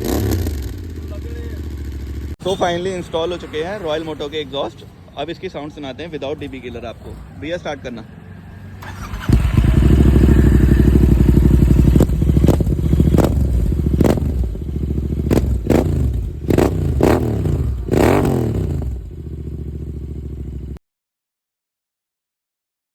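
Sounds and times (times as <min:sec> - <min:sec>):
motorcycle engine revving: 0:00.0 - 0:04.8, 0:08.2 - 0:20.8.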